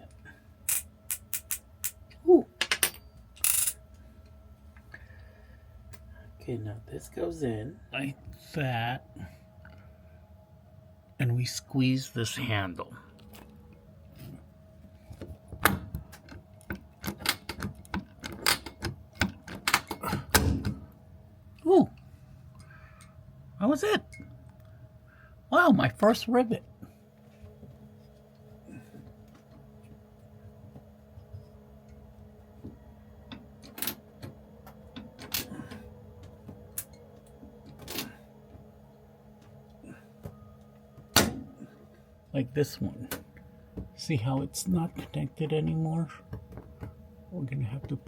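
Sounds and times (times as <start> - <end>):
low hum: 0.0 - 48.0
hand rivet tool clicking: 0.7 - 2.0
small parts being handled: 0.7 - 2.0, 2.6 - 3.8.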